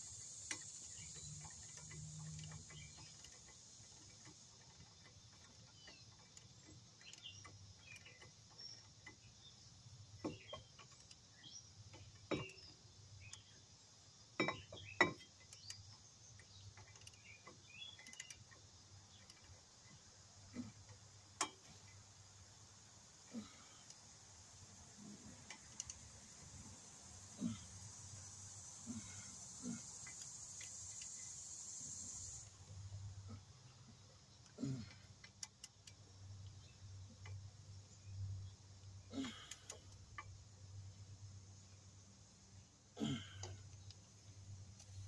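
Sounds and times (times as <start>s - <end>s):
metallic clicks of tools: 14.4s - 19.7s, 25.5s - 26.0s, 39.2s - 40.4s.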